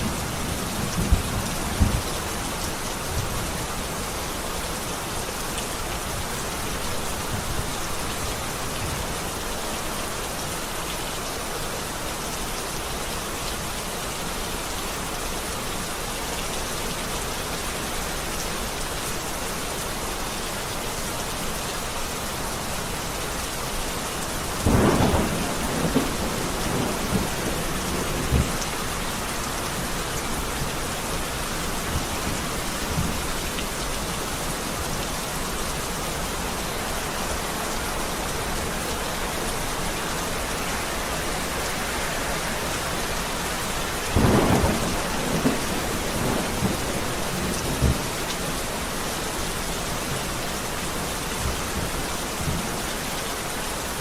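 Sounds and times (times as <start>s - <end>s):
heavy rain: 0.0s - 54.0s
thunder cracks and rumbles: 24.6s - 28.7s, 44.0s - 48.0s.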